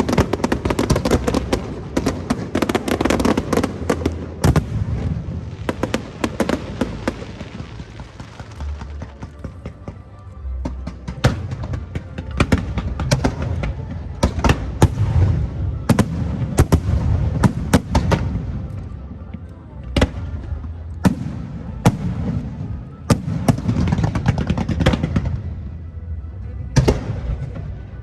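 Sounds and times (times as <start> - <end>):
fireworks bangs: 0.0 - 10.0.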